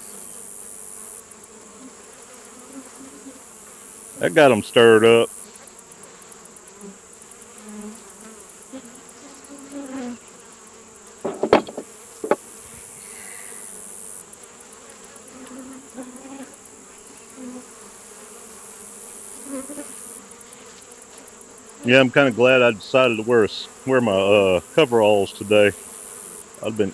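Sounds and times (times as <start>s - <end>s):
honey bees buzzing: 0.0s - 26.9s
sharp knocks: 11.2s - 12.4s.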